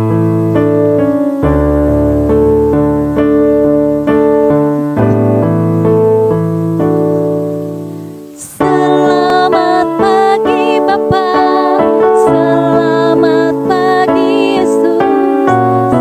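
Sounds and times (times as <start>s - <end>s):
electric keyboard: 0.0s - 16.0s
person singing: 8.3s - 16.0s.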